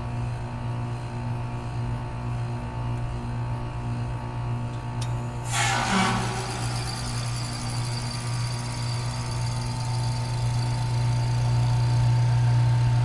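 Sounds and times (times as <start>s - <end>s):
heat pump compressor hum: 0.0s - 13.0s
faint high whine: 5.1s - 13.0s.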